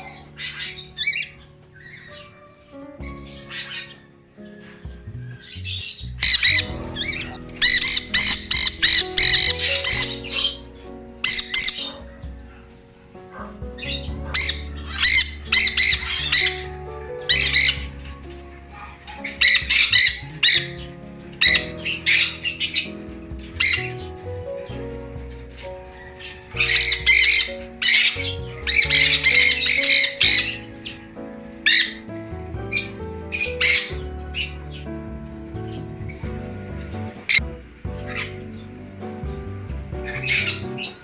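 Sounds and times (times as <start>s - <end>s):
parrots screeching: 5.4s - 10.6s, 11.2s - 12.7s, 13.3s - 23.8s, 25.9s - 32.1s.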